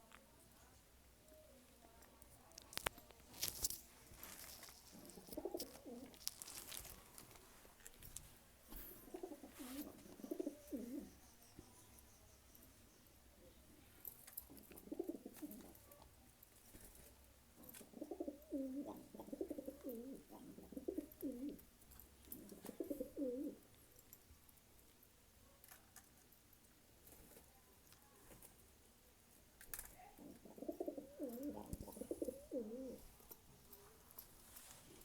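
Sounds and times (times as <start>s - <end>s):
pigeons cooing: 4.9s - 6.2s, 9.0s - 11.1s, 14.5s - 15.8s, 17.7s - 21.6s, 22.3s - 23.6s, 30.2s - 33.0s.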